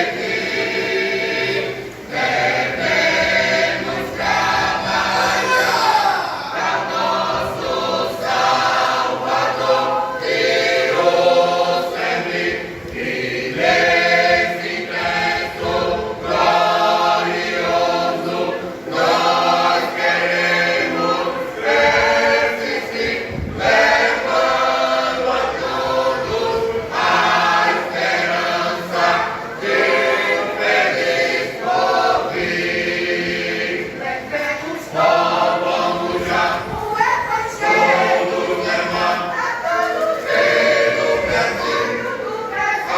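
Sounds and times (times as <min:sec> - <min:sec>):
church choir singing a hymn: 0:00.0 - 0:42.9.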